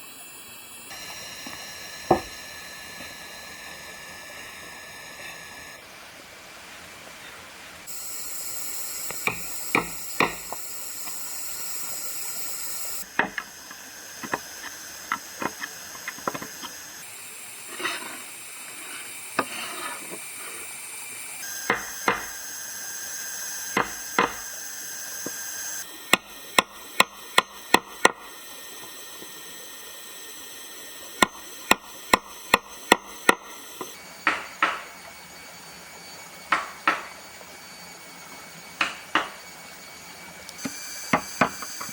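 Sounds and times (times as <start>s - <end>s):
steady hiss: 0.0s - 41.9s
hand tools knocking wood: 1.4s - 2.4s, 9.1s - 11.2s, 13.1s - 16.8s, 21.7s - 22.3s, 23.7s - 24.5s, 34.2s - 34.9s, 36.5s - 37.2s, 38.8s - 39.4s, 40.6s - 41.9s.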